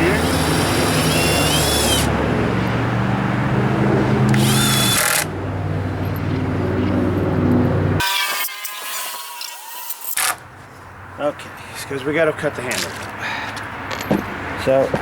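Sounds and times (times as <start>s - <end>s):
chainsaw engine running: 4.3s - 5.3s.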